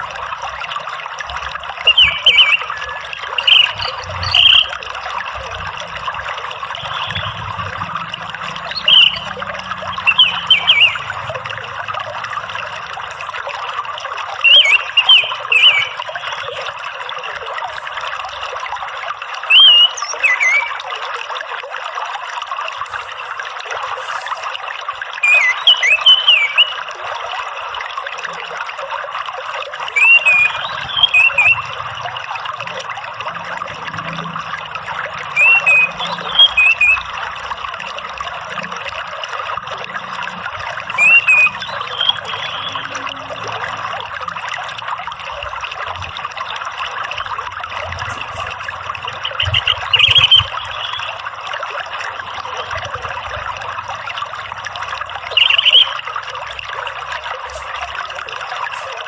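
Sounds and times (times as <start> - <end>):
running water trickling: 0.0 - 59.0
thrush singing whistled phrases: 1.8 - 4.8, 5.4 - 13.4, 14.3 - 16.8, 19.5 - 20.9, 25.2 - 26.9, 29.8 - 32.2, 35.3 - 37.3, 40.8 - 43.4, 46.4 - 51.3, 55.2 - 56.1.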